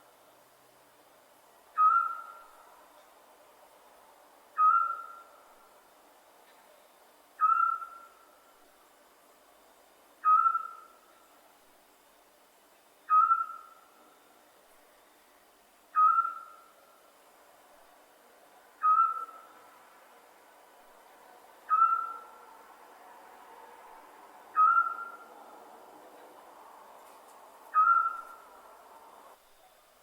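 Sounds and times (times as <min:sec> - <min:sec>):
owl whistled call: 0:01.8 - 0:02.6, 0:04.6 - 0:05.4, 0:07.4 - 0:08.2, 0:10.2 - 0:11.0, 0:13.1 - 0:13.9, 0:15.9 - 0:16.7, 0:18.8 - 0:19.6, 0:21.7 - 0:22.4, 0:24.5 - 0:25.3, 0:27.7 - 0:28.5.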